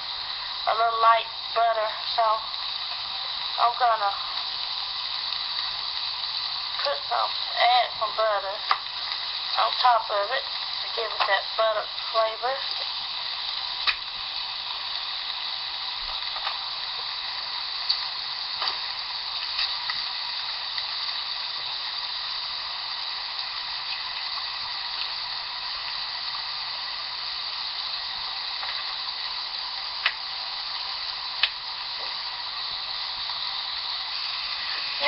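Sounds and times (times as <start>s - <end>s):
meat sizzling on a grill: 0.0s - 35.0s
sharp clicks: 13.8s - 14.1s, 31.4s - 31.6s.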